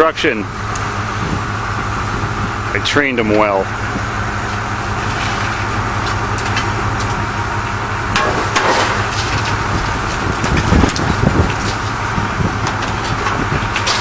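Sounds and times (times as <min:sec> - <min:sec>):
heavy diesel machinery running: 0:00.0 - 0:14.0
loud crunching impacts: 0:03.7 - 0:14.0
metal clanks and knocks: 0:08.1 - 0:14.0.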